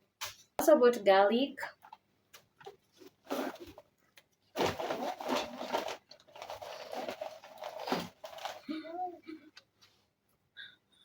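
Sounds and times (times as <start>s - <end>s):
shopping bag rustling: 4.6s - 8.7s.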